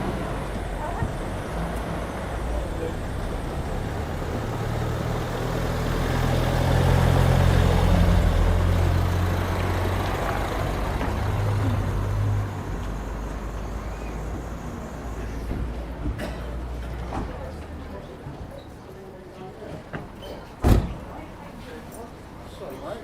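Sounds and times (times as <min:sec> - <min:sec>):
heavy vehicle engine humming: 0:00.0 - 0:18.2
street noise: 0:00.0 - 0:23.0.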